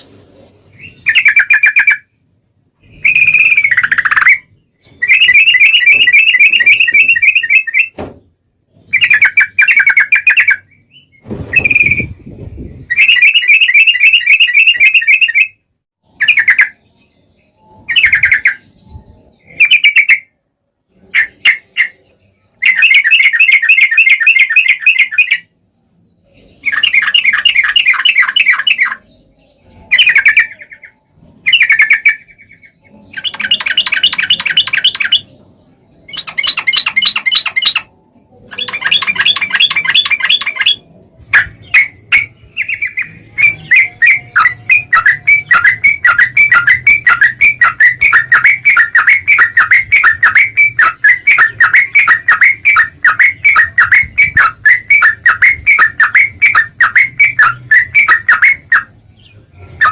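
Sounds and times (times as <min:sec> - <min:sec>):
bird chattering: 0:00.7 - 0:02.2, 0:02.8 - 0:08.0, 0:11.5 - 0:15.5, 0:21.0 - 0:25.6, 0:26.3 - 0:59.9.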